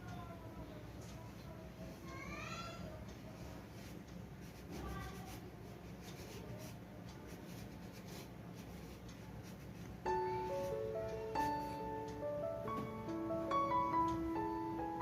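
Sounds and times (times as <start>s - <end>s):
faint rubbing and scratching: 3.4s - 10.0s
soft piano music: 9.5s - 15.0s.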